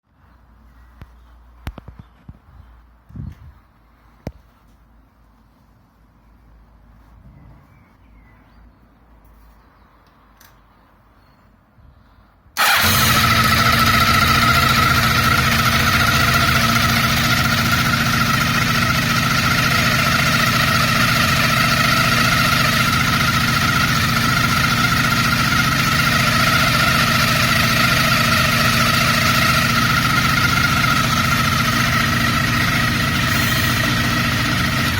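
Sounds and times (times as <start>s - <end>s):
motorcycle engine running: 12.6s - 34.9s
high-pitched whine: 30.8s - 34.9s.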